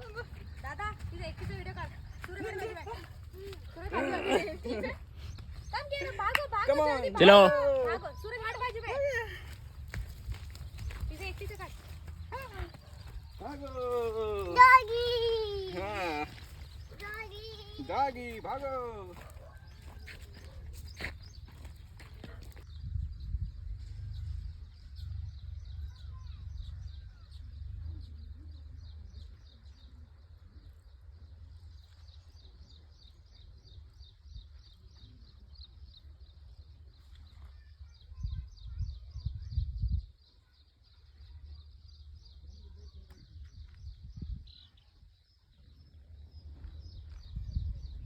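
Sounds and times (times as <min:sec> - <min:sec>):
low rumble: 0:22.7 - 0:28.2.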